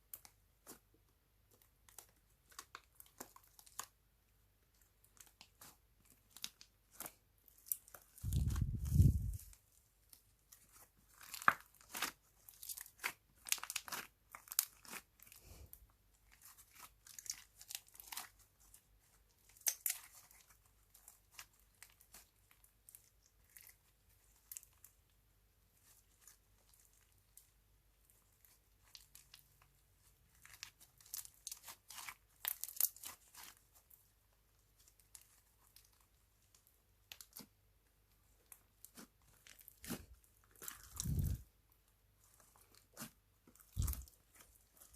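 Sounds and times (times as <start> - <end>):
sticky slime crackles and pops: 4.8 - 15.6, 16.2 - 24.9, 28.1 - 33.9, 34.5 - 37.6, 38.2 - 41.5, 42.2 - 44.9.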